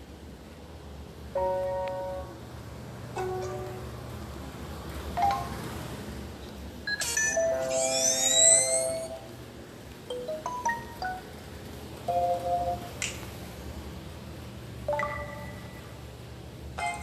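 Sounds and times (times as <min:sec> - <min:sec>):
phone notification chimes: 0:14.9 - 0:15.8.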